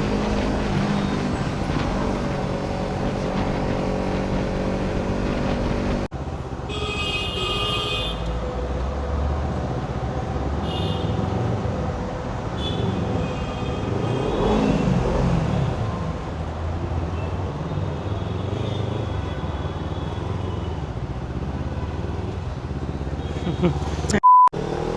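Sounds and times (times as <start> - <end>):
motorcycle engine running: 0.0 - 6.1
vehicle horn: 6.7 - 8.3, 10.6 - 11.1, 12.6 - 14.8.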